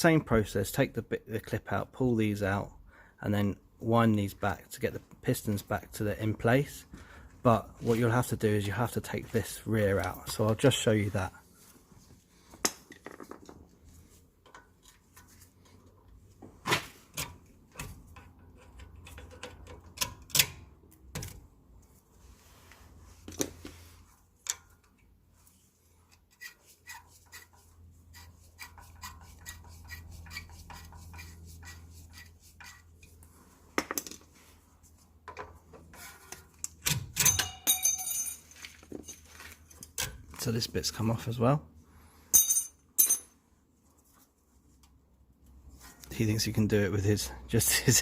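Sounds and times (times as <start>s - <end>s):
ringing metal clinks: 37.2s - 39.2s.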